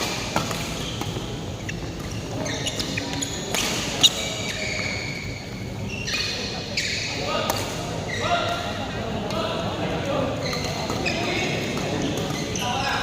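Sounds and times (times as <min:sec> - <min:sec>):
racket hitting shuttlecock: 0:00.0 - 0:01.3
shoes squeaking on court floor: 0:00.0 - 0:08.8, 0:10.2 - 0:13.0.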